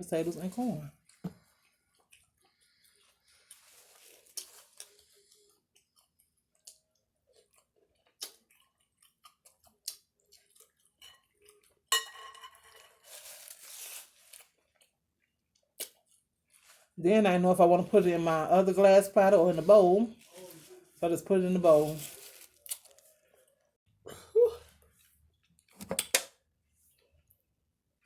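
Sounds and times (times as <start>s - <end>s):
utensils and dishes clinking: 11.9s - 13.2s.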